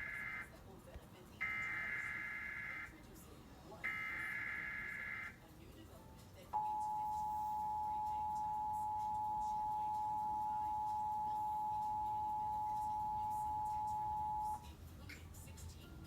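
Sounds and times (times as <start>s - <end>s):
two-tone alert signal: 0.0s - 0.4s, 1.4s - 2.9s, 3.8s - 5.3s, 6.6s - 14.6s.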